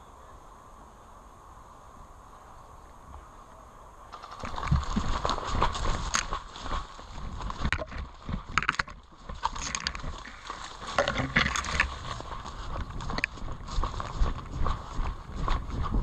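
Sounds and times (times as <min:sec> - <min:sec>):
footsteps crunching through woodland: 0:04.1 - 0:16.0
gear rustling and knocking: 0:04.2 - 0:14.8.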